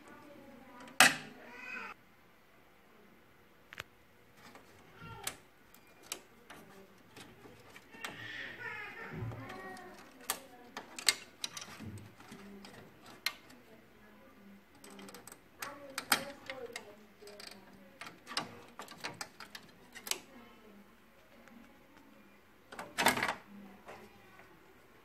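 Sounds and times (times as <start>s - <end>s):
printer parts clicking and knocking: 0.8s - 1.3s, 4.4s - 13.6s, 14.7s - 20.3s, 22.7s - 23.5s.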